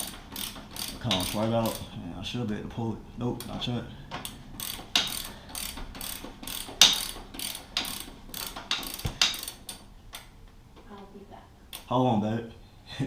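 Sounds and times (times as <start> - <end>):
hand ratchet clicking: 0.0 - 1.9, 3.4 - 10.3.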